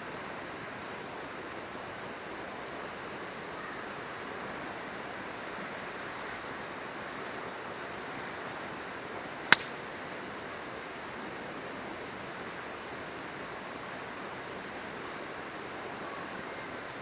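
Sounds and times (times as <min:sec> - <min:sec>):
campfire wood popping: 0:09.5 - 0:11.0.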